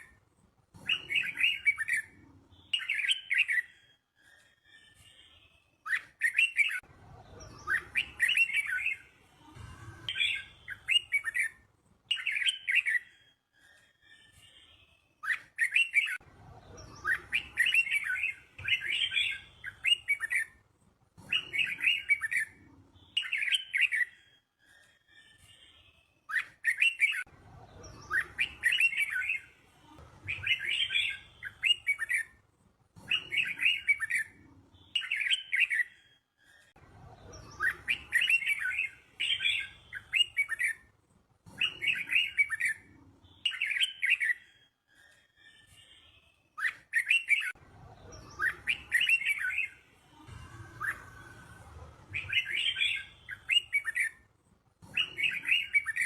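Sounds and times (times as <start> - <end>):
bird singing warbling phrases: 0.8 - 3.8, 5.8 - 9.1, 10.0 - 13.2, 15.2 - 20.6, 21.2 - 24.2, 26.3 - 32.4, 33.0 - 36.1, 37.2 - 40.9, 41.5 - 44.6, 46.6 - 56.0.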